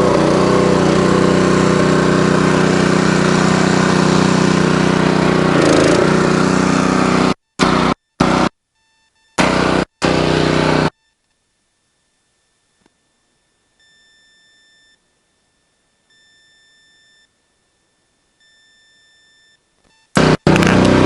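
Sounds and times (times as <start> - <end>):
loud sound cutting off: 0.0 - 8.5, 9.4 - 10.9, 20.2 - 21.0
faint electronic beeps: 7.4 - 9.4, 10.9 - 11.2, 12.4 - 20.2.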